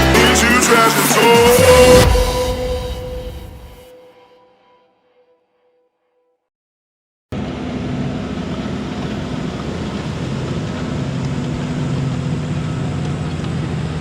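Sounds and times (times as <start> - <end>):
diesel tractor engine running: 7.4 - 14.0.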